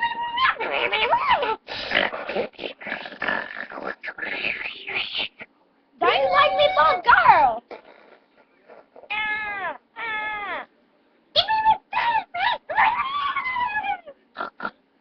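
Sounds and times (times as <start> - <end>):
cat meowing: 9.1 - 10.7.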